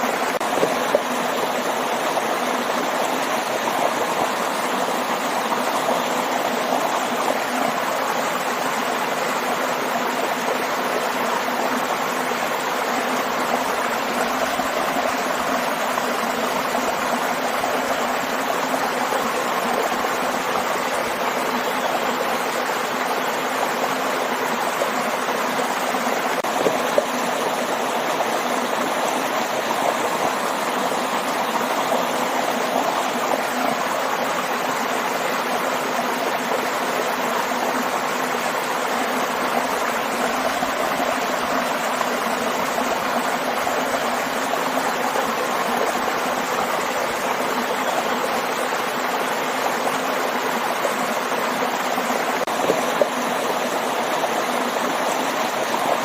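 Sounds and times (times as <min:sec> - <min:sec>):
stream and waterfall rushing: 0:00.0 - 0:56.0.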